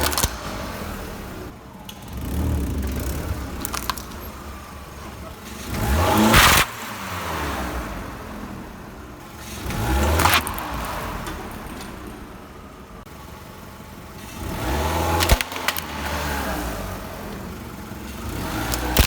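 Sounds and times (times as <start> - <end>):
short sharp cracks: 0.0 - 4.5, 9.4 - 12.2, 15.1 - 16.4, 18.1 - 19.0
car engine revving: 0.0 - 19.0.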